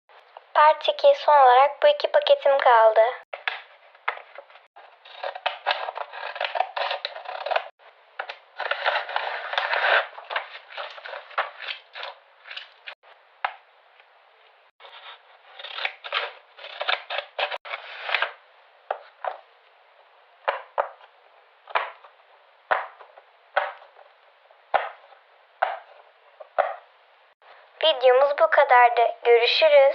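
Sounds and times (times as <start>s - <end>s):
paper crinkling and tearing: 4.3s - 7.7s, 8.5s - 13.0s, 14.8s - 18.4s.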